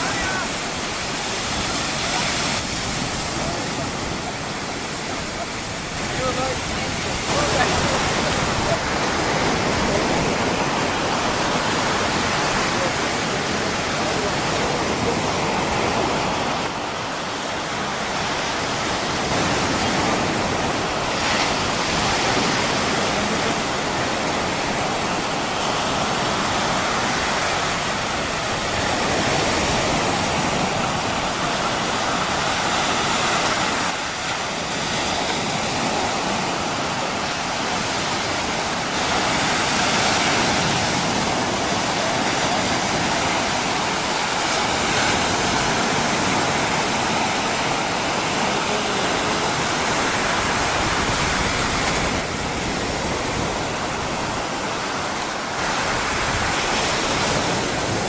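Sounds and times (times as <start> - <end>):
waves breaking on beach: 0.0 - 58.0.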